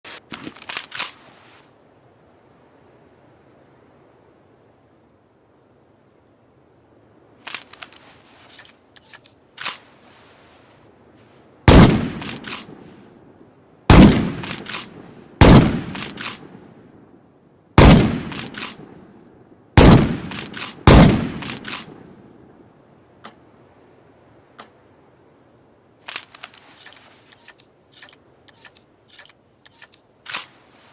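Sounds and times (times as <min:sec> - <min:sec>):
shotgun action clicks: 0:00.2 - 0:01.2, 0:07.4 - 0:09.8, 0:11.7 - 0:12.7, 0:13.9 - 0:16.5, 0:17.8 - 0:18.8, 0:19.8 - 0:22.0, 0:26.1 - 0:30.5
shotgun slide clacking: 0:00.3 - 0:01.2, 0:07.4 - 0:09.8, 0:11.7 - 0:12.7, 0:13.9 - 0:15.0, 0:15.6 - 0:16.4, 0:17.8 - 0:18.8, 0:19.9 - 0:21.9, 0:26.1 - 0:30.6
loud shotgun shots: 0:11.7 - 0:12.7, 0:13.9 - 0:16.5, 0:17.8 - 0:18.8, 0:19.8 - 0:22.0.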